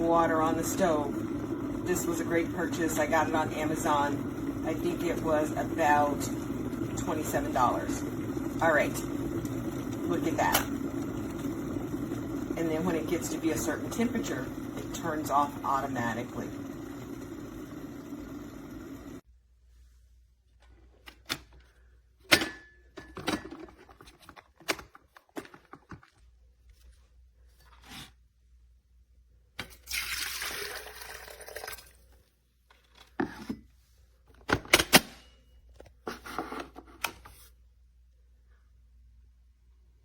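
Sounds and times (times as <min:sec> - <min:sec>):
water pouring: 0:00.1 - 0:19.2, 0:29.7 - 0:32.2.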